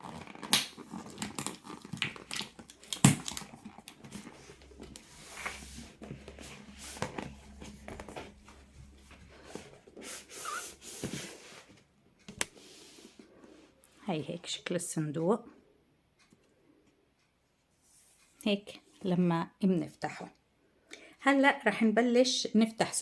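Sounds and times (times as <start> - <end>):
cardboard packaging tearing and crinkling: 0.0 - 5.9.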